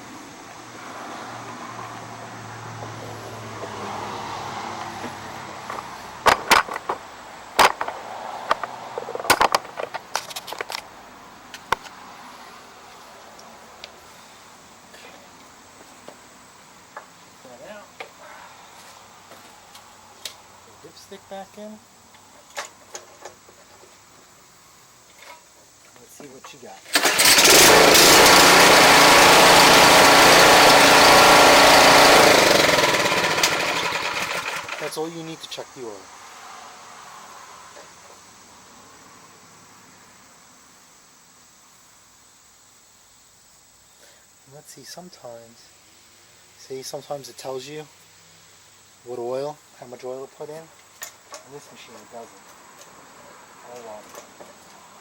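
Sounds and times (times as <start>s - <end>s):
faint background noise: 0.0s - 27.2s, 34.3s - 55.0s
hard objects clicking and knocking: 5.7s - 7.0s, 7.6s - 10.9s
snowblower engine running: 27.0s - 34.9s.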